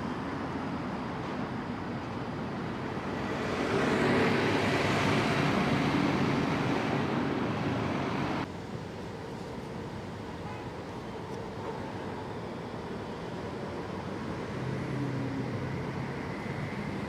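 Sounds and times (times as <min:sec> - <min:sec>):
traffic hum: 0:00.0 - 0:17.0
vehicle passing close: 0:03.0 - 0:08.5.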